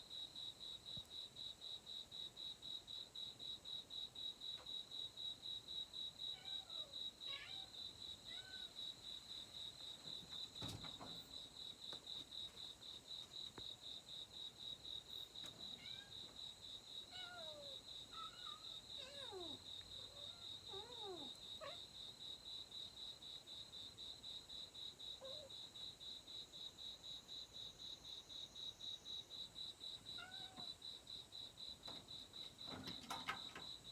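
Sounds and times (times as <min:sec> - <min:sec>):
cricket chirping: 0:00.0 - 0:33.9
faint cat meows: 0:06.3 - 0:08.9, 0:15.4 - 0:16.4, 0:17.0 - 0:22.0, 0:25.2 - 0:25.6, 0:30.0 - 0:30.8.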